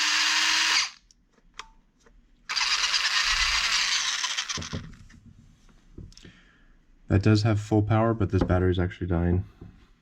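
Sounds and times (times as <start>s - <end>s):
rc truck motor whirring: 0.0s - 1.0s, 2.5s - 4.7s.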